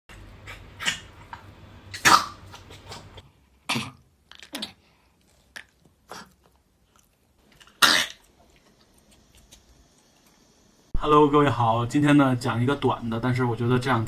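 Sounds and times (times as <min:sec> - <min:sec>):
dog coughing: 0:02.0 - 0:02.4, 0:07.8 - 0:08.2.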